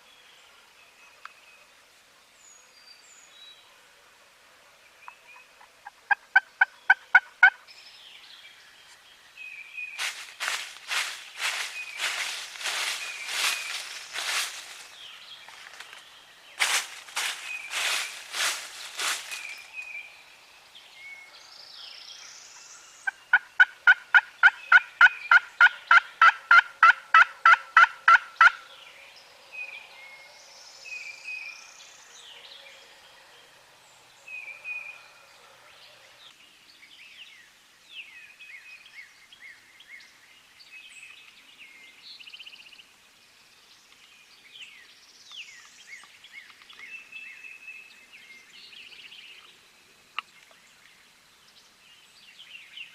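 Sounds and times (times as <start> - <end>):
songbirds chirping: 0.0 - 52.9.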